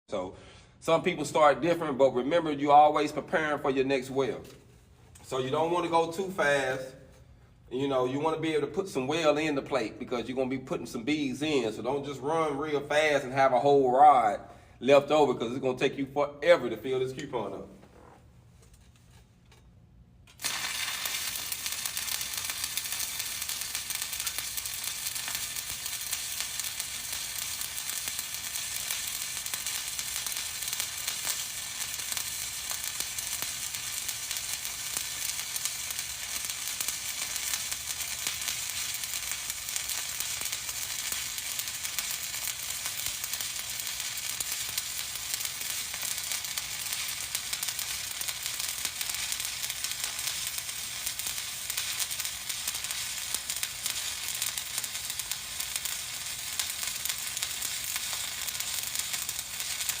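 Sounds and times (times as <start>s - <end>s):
welding arc crackling sizzle: 0.8s - 7.2s, 20.2s - 60.0s.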